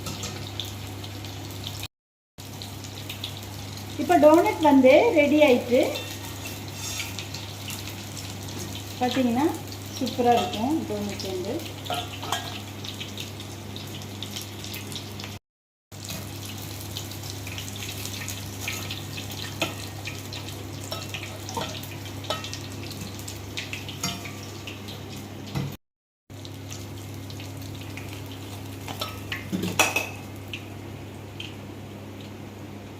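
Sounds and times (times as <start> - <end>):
food sizzling in hot oil: 0.0 - 32.4
metal utensil clinking on pan: 5.9 - 7.2, 11.9 - 12.6, 20.9 - 22.6.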